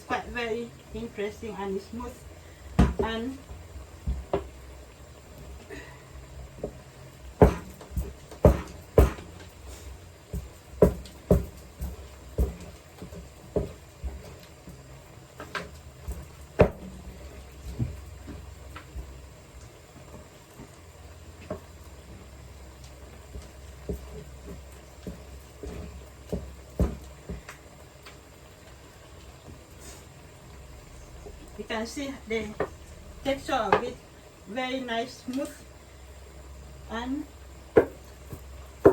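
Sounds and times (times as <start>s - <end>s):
rolling pin pounding in wooden bowl: 7.4s - 9.4s, 10.3s - 12.7s, 16.6s - 16.9s, 37.8s - 38.0s.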